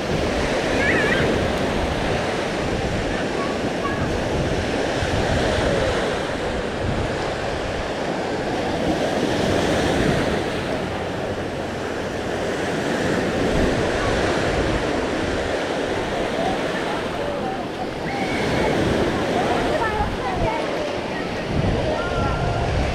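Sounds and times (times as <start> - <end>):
sea waves washing on beach: 0.0 - 22.9
wind buffeting microphone: 0.0 - 22.9.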